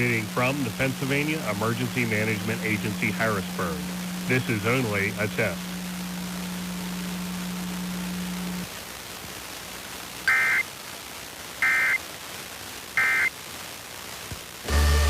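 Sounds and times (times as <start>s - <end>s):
low hum: 0.0s - 8.7s
two-tone digital data bursts: 10.3s - 10.6s, 11.6s - 12.0s, 13.0s - 13.3s.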